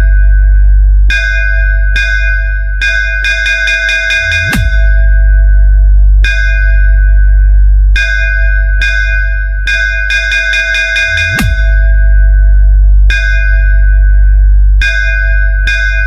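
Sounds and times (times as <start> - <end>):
deep bass drone: 0.0 - 16.0
bell-like synth hits: 1.1 - 5.4, 8.0 - 12.4.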